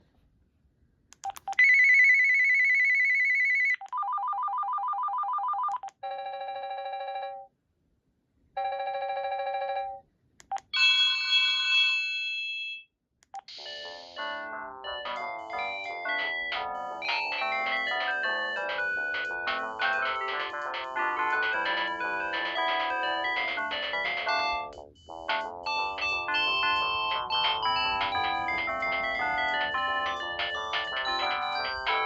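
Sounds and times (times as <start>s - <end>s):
cordless phone ringtones: 14.9s - 32.0s.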